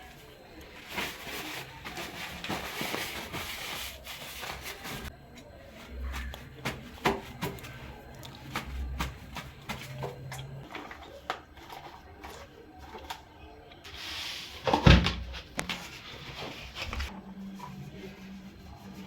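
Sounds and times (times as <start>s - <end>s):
rustling: 0.1s - 5.1s.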